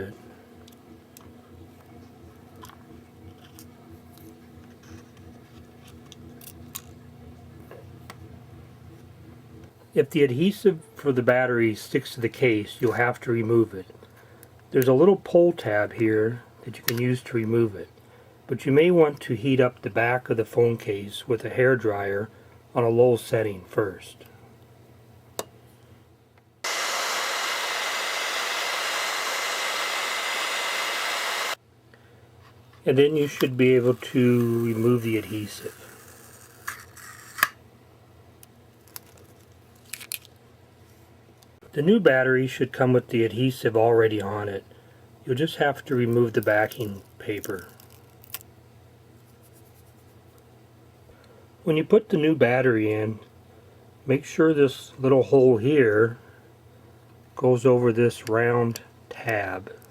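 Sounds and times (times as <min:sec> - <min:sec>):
steady low hum: 0:00.0 - 0:59.9
hair dryer blowing: 0:26.6 - 0:31.6.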